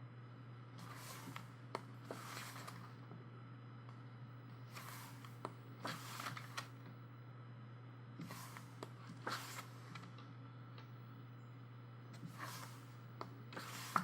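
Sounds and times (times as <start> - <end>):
steady low hum: 0.0 - 14.0
paper pages turning: 2.1 - 2.9, 4.7 - 6.7, 8.2 - 10.1, 12.2 - 12.9, 13.6 - 14.0.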